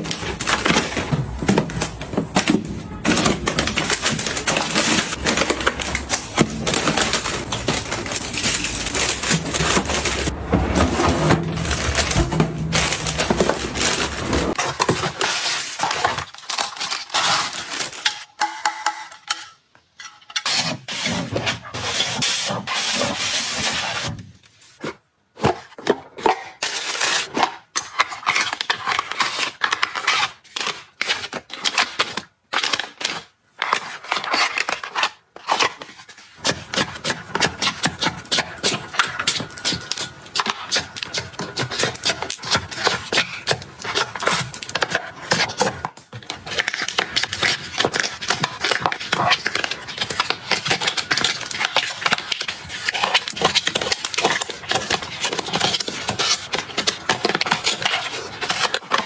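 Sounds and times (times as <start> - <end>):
rubbing and scraping: 0.0 - 16.2, 35.4 - 59.0.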